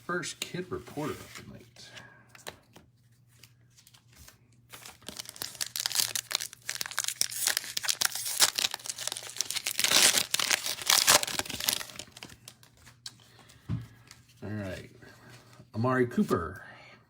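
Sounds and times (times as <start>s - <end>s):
card wrapper tearing and crinkling: 3.4s - 13.2s.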